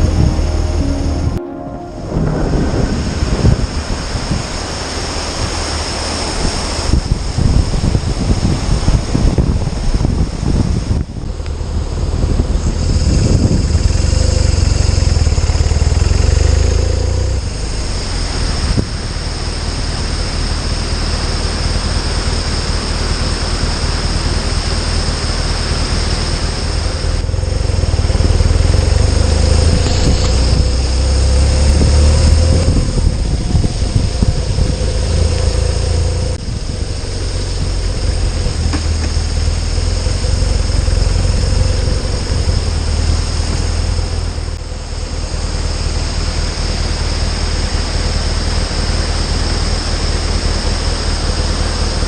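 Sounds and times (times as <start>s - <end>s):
wind rush and road noise: 2.0s - 52.0s
motorcycle engine running: 27.2s - 31.0s.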